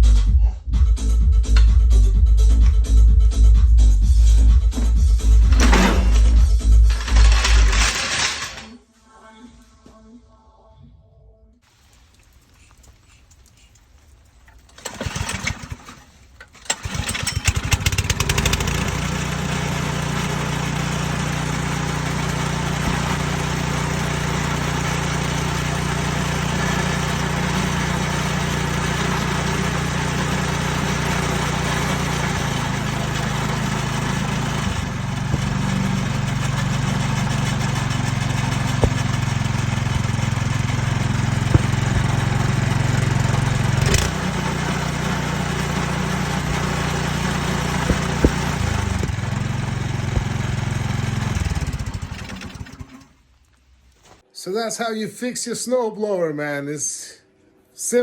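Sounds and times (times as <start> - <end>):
small gasoline engine running: 5.4 - 6.2, 6.9 - 8.6, 14.7 - 53.2.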